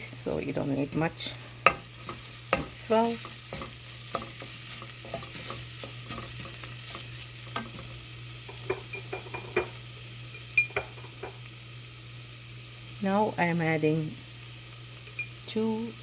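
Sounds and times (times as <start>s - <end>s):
frying in oil sizzling: 0.0s - 16.0s
spoon clicking against pan: 1.6s - 7.9s, 8.5s - 11.4s.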